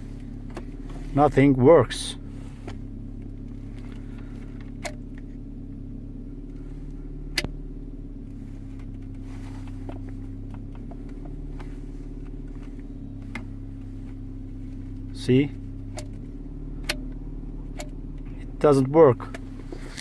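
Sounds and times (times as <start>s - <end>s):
car engine idling: 0.0s - 20.0s.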